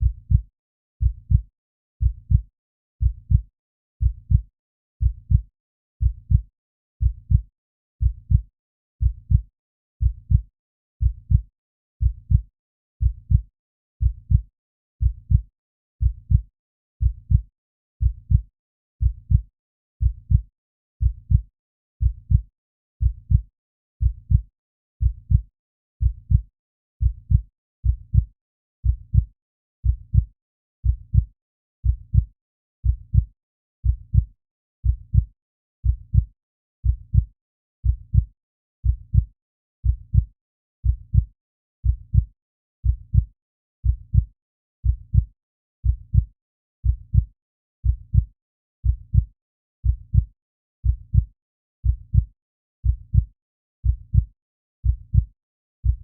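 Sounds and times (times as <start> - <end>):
heartbeat thumps: 2.0 - 2.4, 3.0 - 3.4, 28.1 - 28.3, 55.1 - 56.0.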